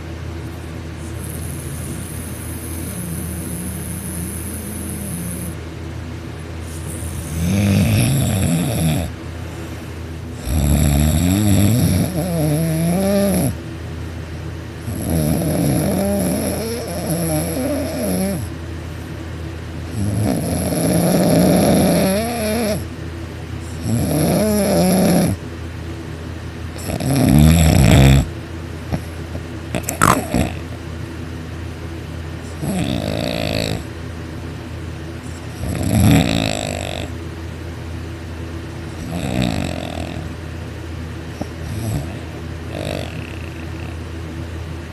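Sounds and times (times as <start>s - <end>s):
man snoring loudly: 1.1s - 5.6s, 6.7s - 9.1s, 10.4s - 13.6s, 14.8s - 18.5s, 19.9s - 22.8s, 23.8s - 25.4s, 26.8s - 28.3s, 29.8s - 30.7s, 32.5s - 33.9s, 35.6s - 37.1s, 39.0s - 40.3s, 41.6s - 44.0s.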